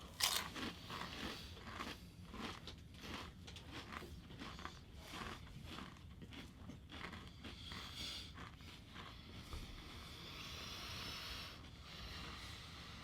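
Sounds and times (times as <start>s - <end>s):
potato chips being chewed: 0.0s - 9.4s.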